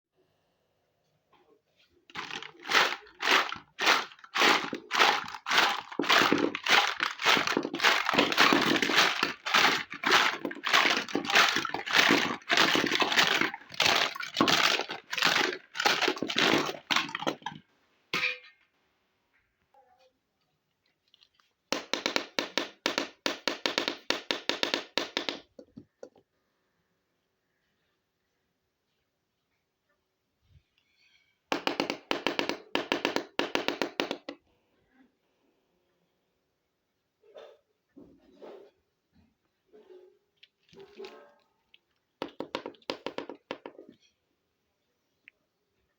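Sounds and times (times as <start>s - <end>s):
packaging crinkling: 2.1s - 17.6s.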